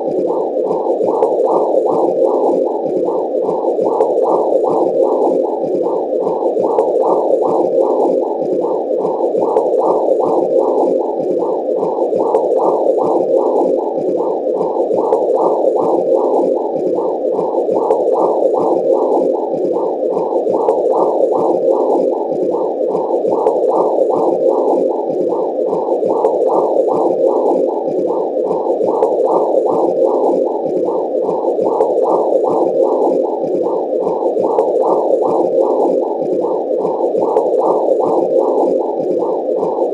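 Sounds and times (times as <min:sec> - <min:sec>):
muffled pulsing whooshing: 0:00.0 - 0:39.9.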